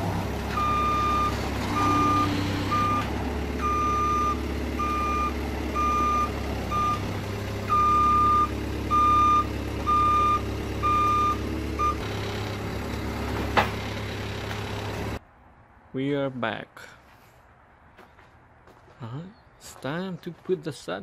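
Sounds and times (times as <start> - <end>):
engine running: 0.0 - 15.2
reversing alarm beeping: 0.6 - 7.0, 7.7 - 12.0.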